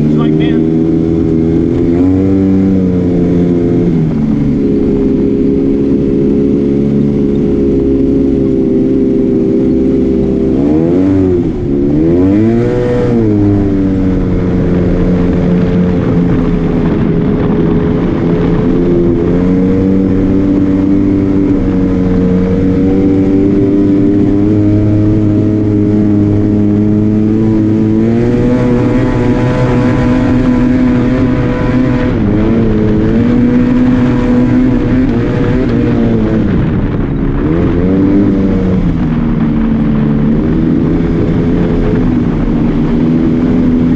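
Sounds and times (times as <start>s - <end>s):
utility vehicle engine revving: 0.0s - 43.9s.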